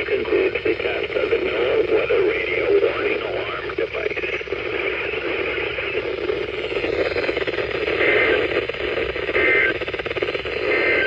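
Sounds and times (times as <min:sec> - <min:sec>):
radio static and hiss: 0:00.0 - 0:11.0
two-tone data bursts: 0:04.0 - 0:11.0.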